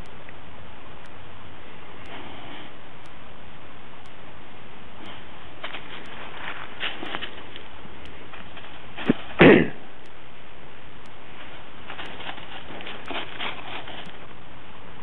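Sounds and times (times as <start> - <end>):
dog huffing and sniffing: 11.9 - 14.1.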